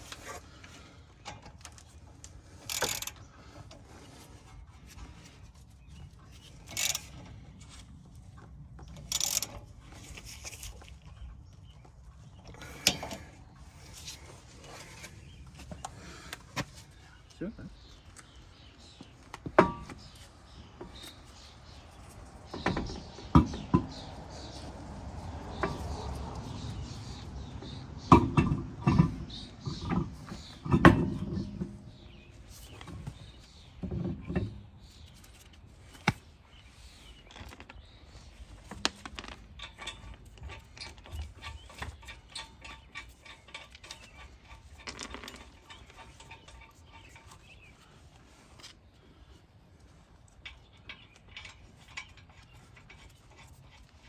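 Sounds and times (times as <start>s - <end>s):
metal tools clanking: 2.5s - 3.3s, 8.9s - 10.8s, 12.5s - 16.3s, 18.3s - 36.0s, 38.4s - 48.7s, 50.2s - 54.0s.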